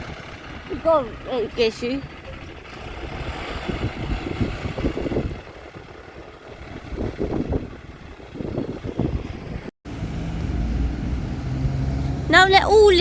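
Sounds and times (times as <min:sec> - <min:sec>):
bus engine running: 0:00.0 - 0:13.0
wind buffeting microphone: 0:00.0 - 0:13.0.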